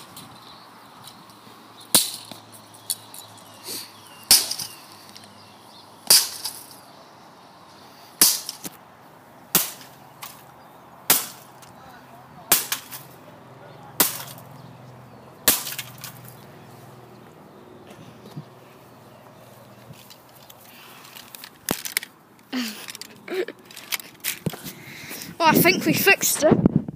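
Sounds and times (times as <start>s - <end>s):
plastic rattling: 20.0s - 22.1s, 22.8s - 24.5s.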